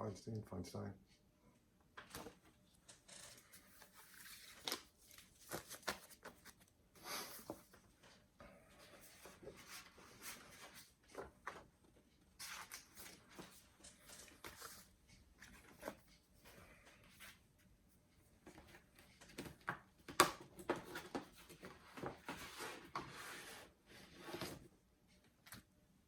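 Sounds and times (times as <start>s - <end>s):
pages turning: 3.2s - 7.8s.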